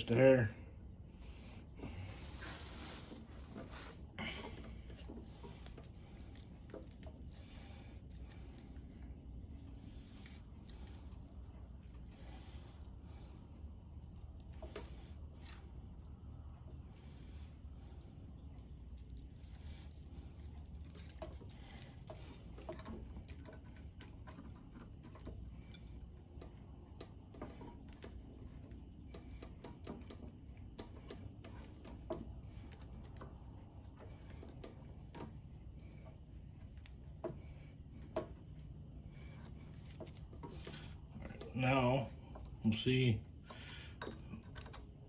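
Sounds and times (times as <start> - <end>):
light clicks and metal taps: 42.2 - 45.0.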